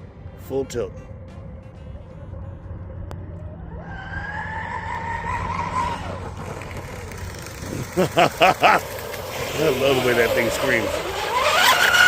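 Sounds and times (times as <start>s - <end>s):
electric boat motor whining: 3.9s - 12.0s.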